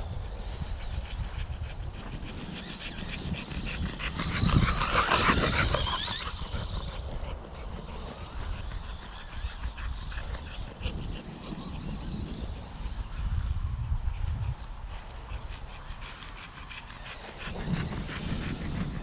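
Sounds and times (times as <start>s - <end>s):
dog vocalising: 2.2s - 11.9s.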